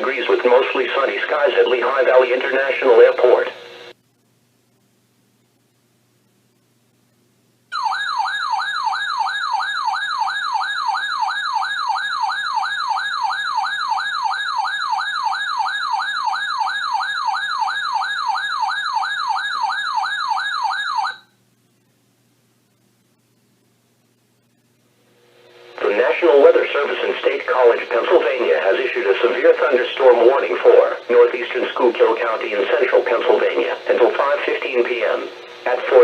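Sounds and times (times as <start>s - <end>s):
electronic warbling alert siren: 7.8s - 21.3s.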